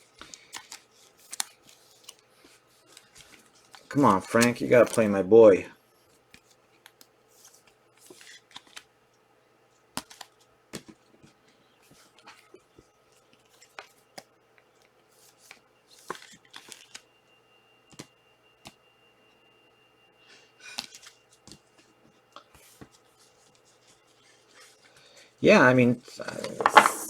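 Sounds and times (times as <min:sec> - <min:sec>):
trading cards rustling and clicking: 0:00.0 - 0:05.3, 0:06.2 - 0:08.9, 0:10.0 - 0:17.1, 0:26.2 - 0:27.0
cards swishing: 0:26.3 - 0:27.0.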